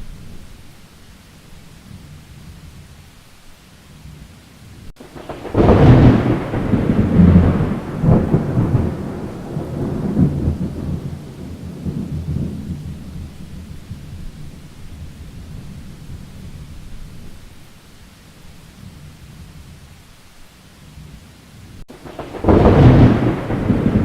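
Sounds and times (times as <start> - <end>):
heavy rain hiss: 0.0 - 24.0
thunderclap and rumbles: 4.9 - 17.4, 21.9 - 24.0.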